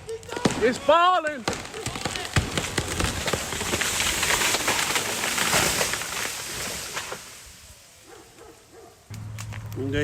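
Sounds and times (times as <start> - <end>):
tree crashing down: 0.2 - 7.6.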